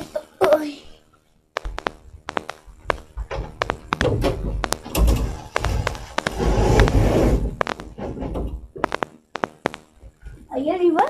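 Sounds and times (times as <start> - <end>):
knocks taps and thuds: 1.6 - 6.9
rumbling rustling noise: 1.6 - 10.5.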